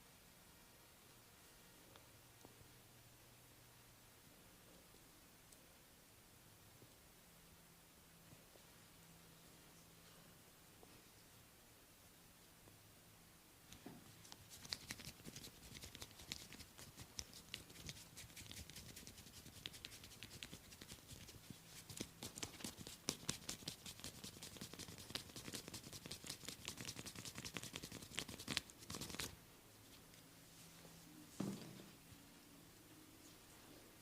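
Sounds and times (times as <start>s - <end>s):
taps and rubbing on scalp: 14.3s - 29.3s.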